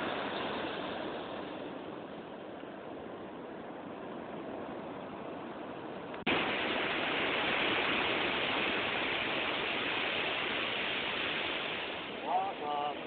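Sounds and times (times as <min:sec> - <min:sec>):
waves breaking on beach: 0:00.0 - 0:02.5, 0:06.2 - 0:13.0.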